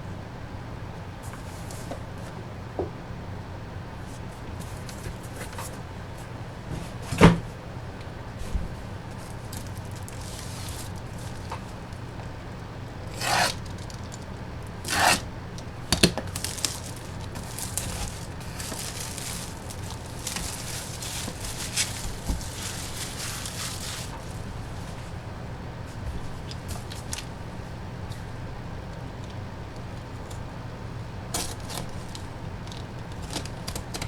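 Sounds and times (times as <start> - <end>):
rustling and rubbing: 8.4 - 12.0, 16.2 - 25.2
packaging ripping: 16.0 - 24.6.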